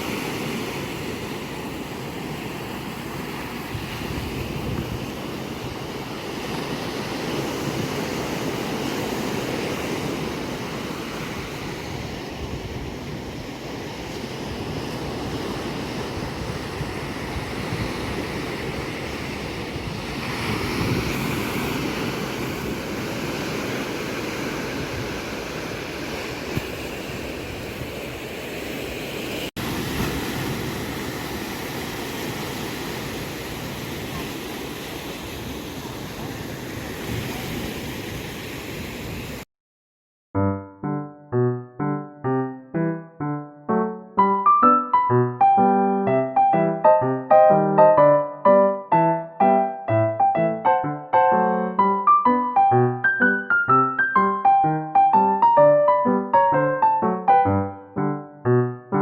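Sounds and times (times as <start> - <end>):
sea surf breaking on shore: 0.0 - 39.5, 44.2 - 58.2.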